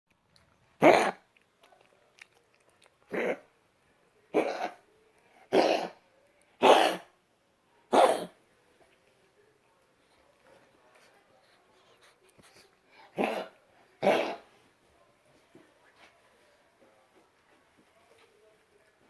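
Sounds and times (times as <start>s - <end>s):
dog coughing: 0.8s - 1.2s, 3.1s - 3.4s, 4.3s - 4.8s, 5.5s - 6.0s, 6.6s - 7.1s, 7.9s - 8.4s, 13.1s - 14.5s.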